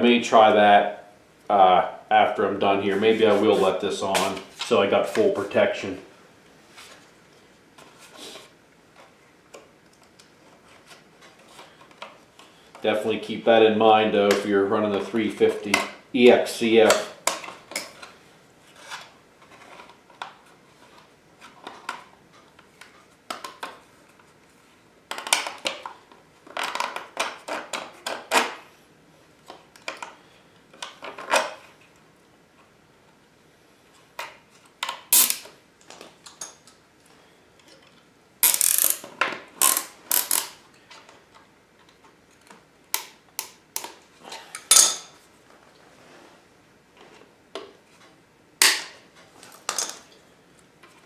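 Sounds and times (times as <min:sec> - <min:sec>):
zip ties ratcheting: 0:35.1 - 0:35.5, 0:38.4 - 0:40.6.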